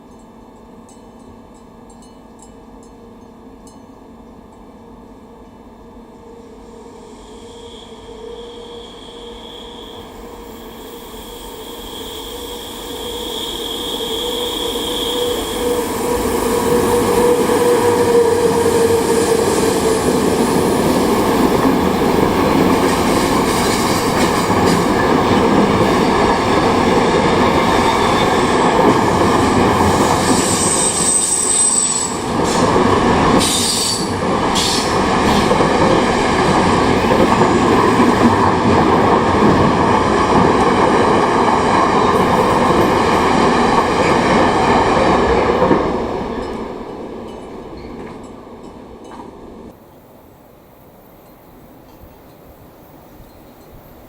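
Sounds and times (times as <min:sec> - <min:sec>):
train rolling past: 0:04.8 - 0:54.0
wheel squeals: 0:07.2 - 0:20.7, 0:22.0 - 0:32.8.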